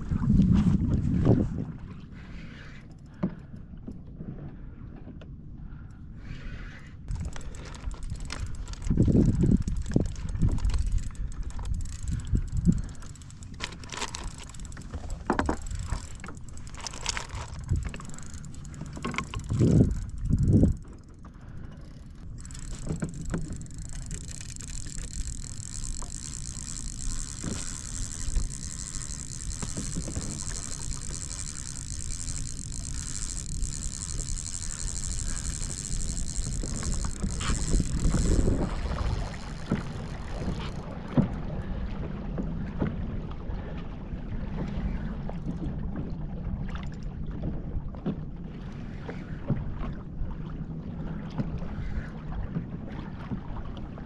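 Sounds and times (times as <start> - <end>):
wind buffeting microphone: 0.0 - 2.0, 7.1 - 43.3.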